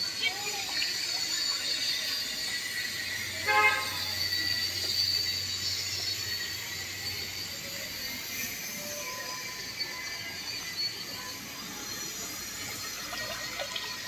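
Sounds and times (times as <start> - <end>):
horn toot: 3.4 - 4.0.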